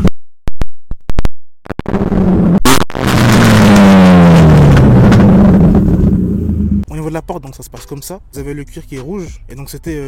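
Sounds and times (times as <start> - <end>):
exhaust cracks and pops: 1.1 - 6.6
loud car engine revving: 1.9 - 6.8.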